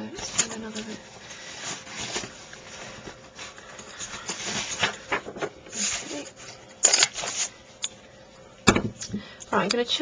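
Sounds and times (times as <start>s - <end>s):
paper and card rustling: 0.2s - 7.6s.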